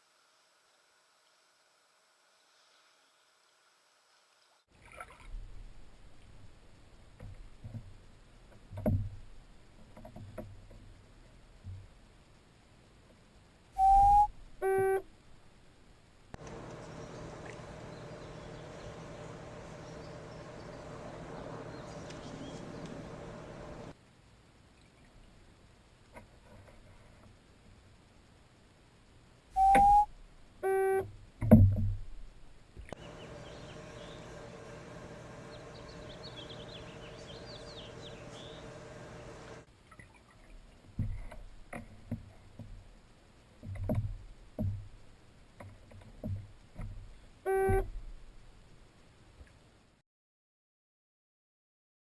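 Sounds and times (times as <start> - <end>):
buzzy electronic beep: 13.8 - 15.0, 29.6 - 31.0
short test tone: 13.8 - 15.0, 29.6 - 31.0
steady hum: 13.8 - 24.0, 32.0 - 39.7.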